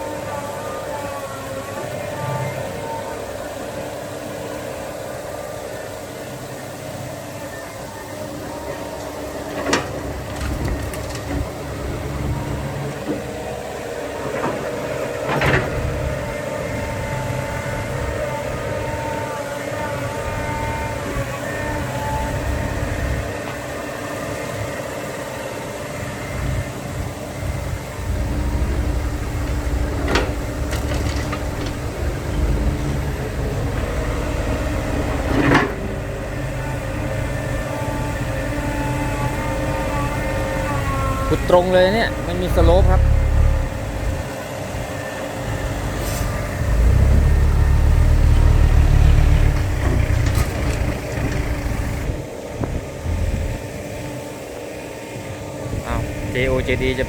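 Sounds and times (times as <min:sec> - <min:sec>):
heavy diesel engines running: 0:00.0 - 0:57.0
sharp engine knocks: 0:28.4 - 0:33.9.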